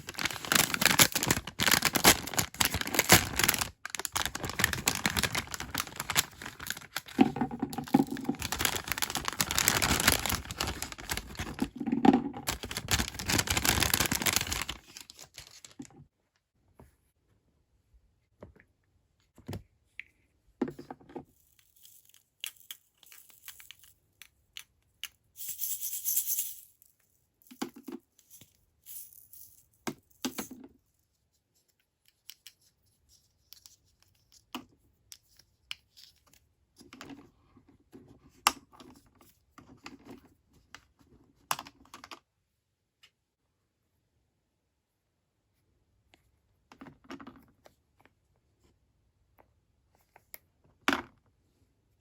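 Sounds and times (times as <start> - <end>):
packaging tearing and crinkling: 0.0 - 11.8, 12.4 - 15.8
packaging rustling: 0.0 - 15.9.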